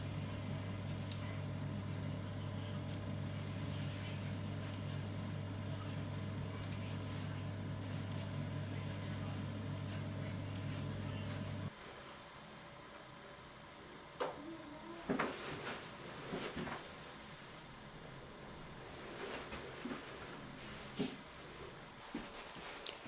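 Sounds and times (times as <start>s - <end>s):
machine hum: 0.0s - 11.8s, 12.5s - 22.7s
rustles: 15.0s - 17.0s, 18.8s - 23.0s.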